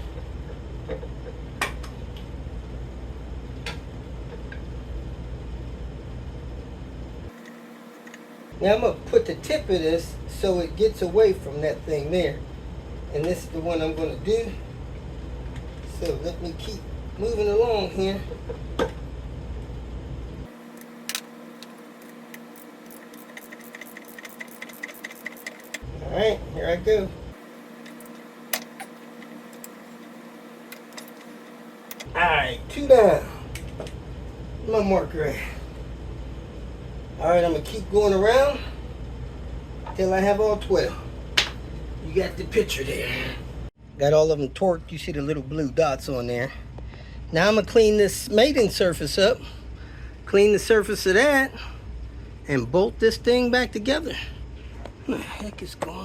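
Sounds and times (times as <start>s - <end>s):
steady low hum: 0.0s - 56.0s
ratchet wrench clicking: 22.3s - 25.8s.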